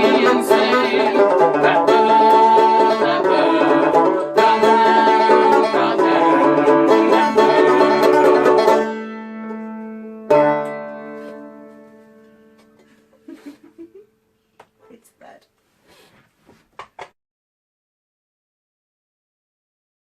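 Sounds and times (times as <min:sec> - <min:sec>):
plucked string instruments: 0:00.0 - 0:14.0.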